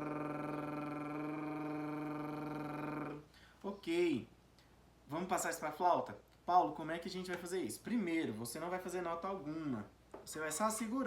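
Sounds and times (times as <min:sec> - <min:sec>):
man rolling a tongue trill: 0:00.0 - 0:03.3.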